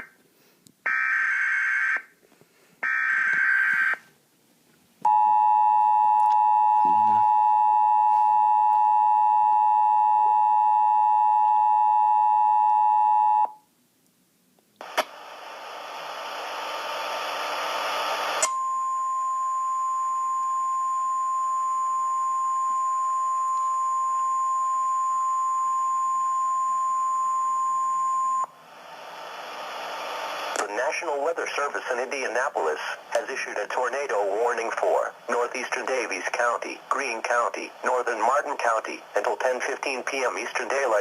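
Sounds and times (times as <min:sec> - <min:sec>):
steady high alarm tone: 0:05.1 - 0:13.5
static hiss: 0:14.8 - 0:18.4, 0:28.5 - 0:41.0.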